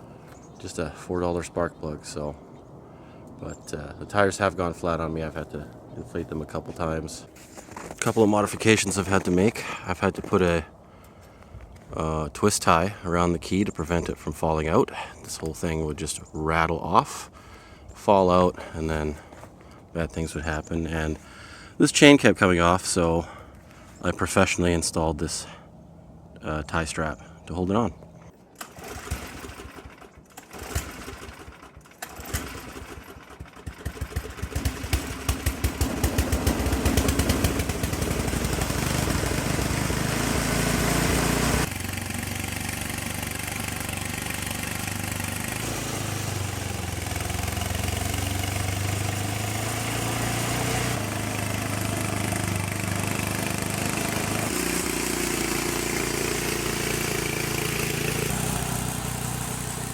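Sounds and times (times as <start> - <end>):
snowblower engine running: 28.6 - 59.9.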